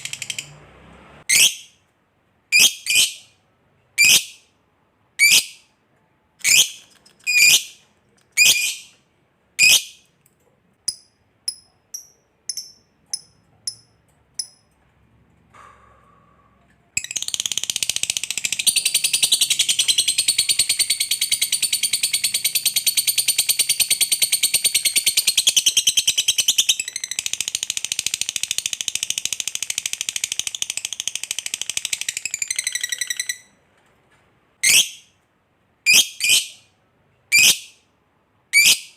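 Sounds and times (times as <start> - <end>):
lovebird chirping: 1.3 - 1.8, 2.5 - 3.4, 4.0 - 4.5, 6.4 - 9.0, 9.6 - 10.0, 10.9 - 14.7, 17.0 - 33.6.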